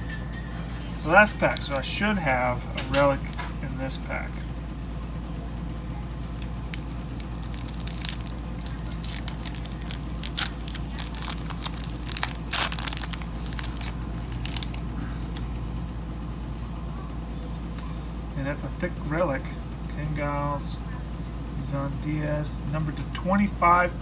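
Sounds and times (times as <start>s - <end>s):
wrapper tearing and crinkling: 6.6s - 14.8s.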